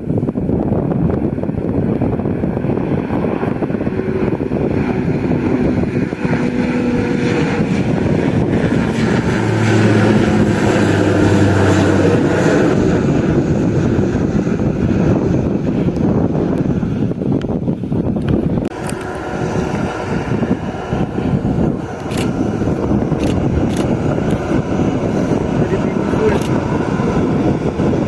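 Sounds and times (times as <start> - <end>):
turboprop engines droning: 0.0 - 28.0.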